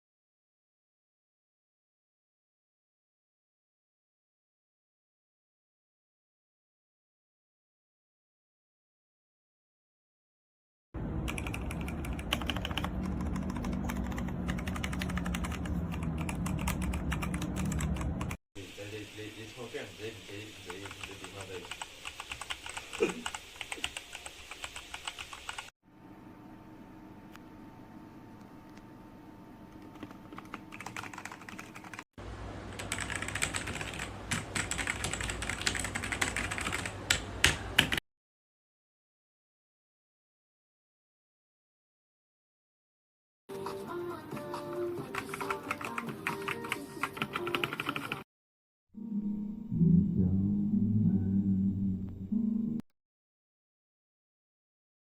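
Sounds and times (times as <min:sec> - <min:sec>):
mechanical keyboard typing: 0:11.2 - 0:18.4, 0:20.7 - 0:25.7, 0:29.8 - 0:32.0, 0:32.7 - 0:38.0, 0:44.4 - 0:48.2.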